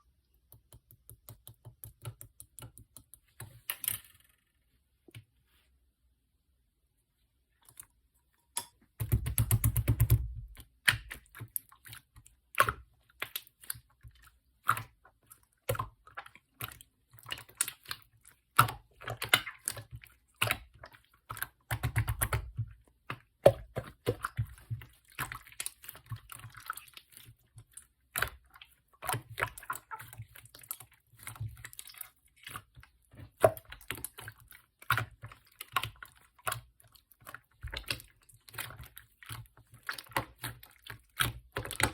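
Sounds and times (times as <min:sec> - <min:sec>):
slime squishing and crackling: 0:09.0 - 0:41.9.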